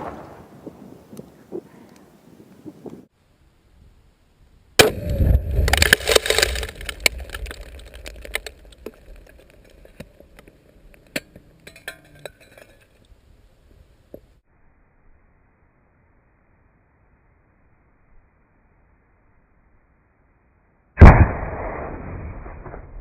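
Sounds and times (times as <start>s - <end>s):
debris clinking and cracking: 5.6s - 13.0s
loud explosive blast: 21.0s - 23.0s.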